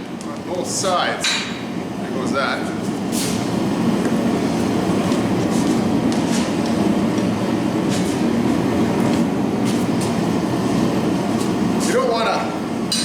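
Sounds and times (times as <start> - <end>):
propane forge burner rushing: 0.0 - 13.0.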